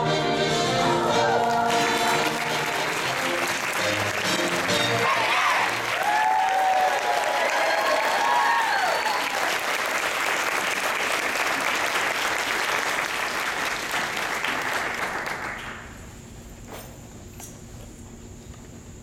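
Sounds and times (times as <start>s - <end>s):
music with held notes: 0.0s - 5.3s
audience applauding: 1.0s - 15.9s.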